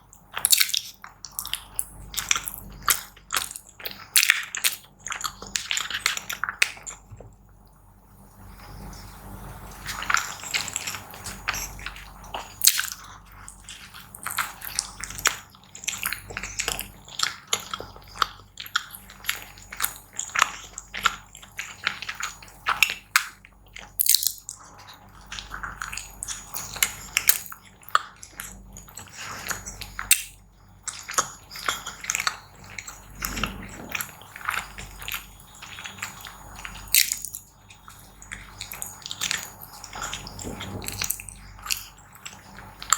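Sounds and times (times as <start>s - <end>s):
wet chewing: 9.8s - 42.9s.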